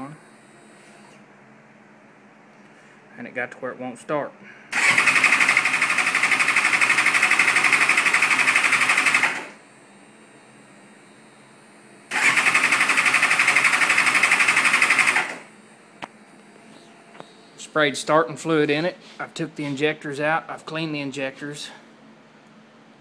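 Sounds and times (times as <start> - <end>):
motorcycle starter cranking: 4.8 - 9.5, 12.1 - 15.4.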